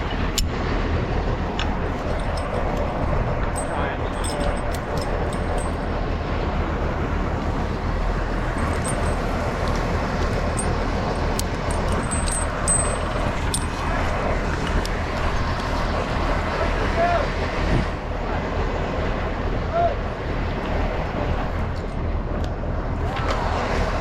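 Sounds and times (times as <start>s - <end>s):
engine humming: 0.0s - 24.0s
sharp metallic clicks: 1.6s - 5.8s, 8.6s - 13.8s.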